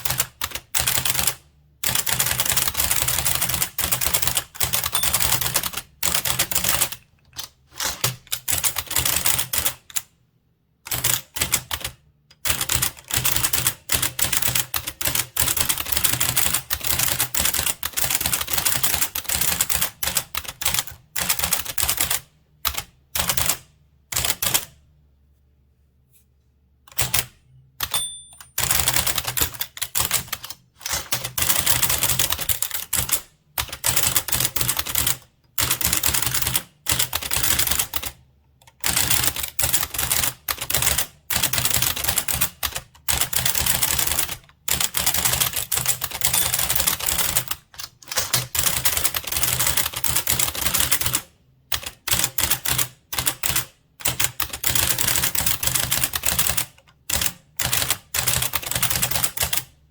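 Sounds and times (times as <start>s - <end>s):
typewriter keys clacking: 0.0s - 10.0s, 26.9s - 38.1s, 38.8s - 59.7s.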